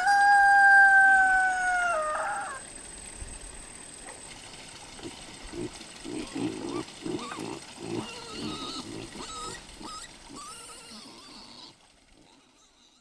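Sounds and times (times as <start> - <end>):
high-pitched pig calls: 0.0 - 2.6, 5.5 - 13.0
pigs grunting: 5.0 - 13.0.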